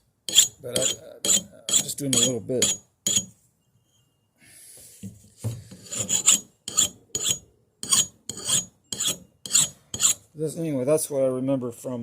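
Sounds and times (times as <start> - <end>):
hand file scraping metal: 0.3 - 3.3, 5.7 - 10.2.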